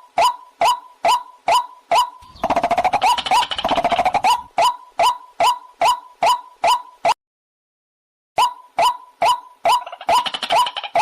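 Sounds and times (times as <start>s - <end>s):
waterhen calling: 1.1s - 6.9s.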